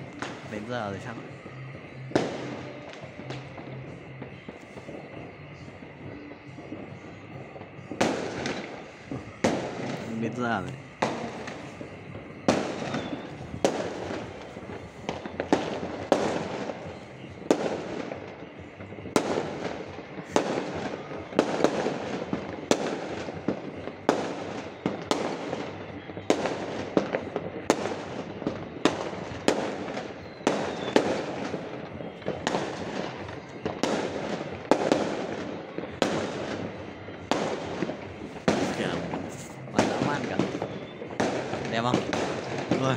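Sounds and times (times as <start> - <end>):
fireworks bangs with echoes: 0.0 - 42.9.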